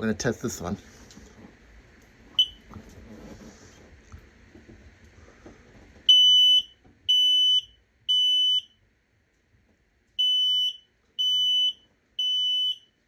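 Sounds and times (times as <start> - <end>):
smoke alarm beeping: 2.4 - 2.7, 6.1 - 8.8, 10.2 - 13.0.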